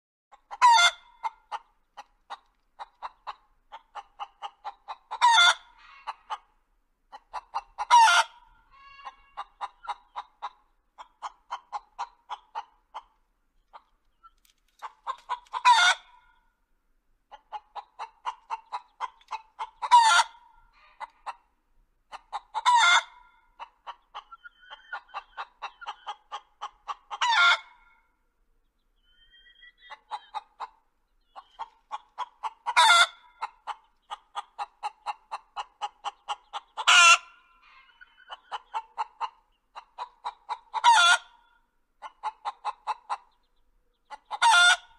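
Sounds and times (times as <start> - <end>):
chicken clucking: 0.3 - 16.5, 17.2 - 44.9
chicken squawking: 0.5 - 1.4, 4.0 - 6.4, 7.1 - 10.5, 14.9 - 16.2, 17.3 - 21.4, 22.1 - 27.9, 29.0 - 41.4, 44.1 - 44.9.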